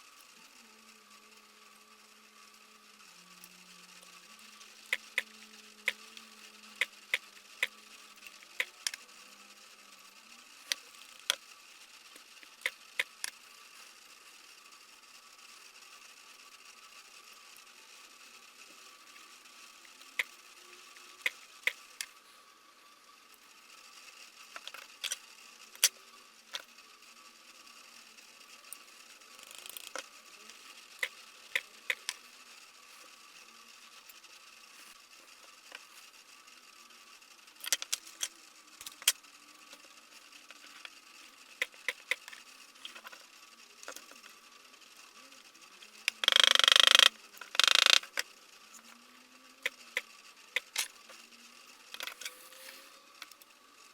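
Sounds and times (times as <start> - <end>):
small tools clicking and tapping: 37.6 - 39.8, 46.1 - 48.3.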